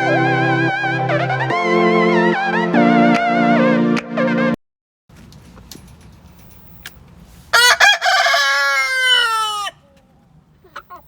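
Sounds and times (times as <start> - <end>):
rooster crowing: 7.5 - 10.0
chickens clucking faintly: 7.6 - 11.0.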